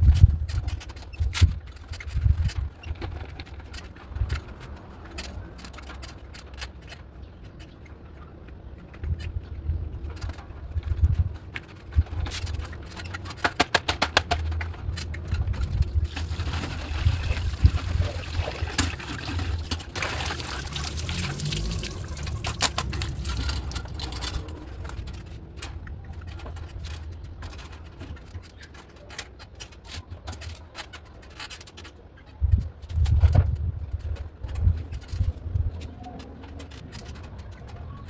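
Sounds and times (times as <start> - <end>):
plastic parts clicking and clattering: 0.0 - 38.0
water running and splashing: 16.0 - 24.5.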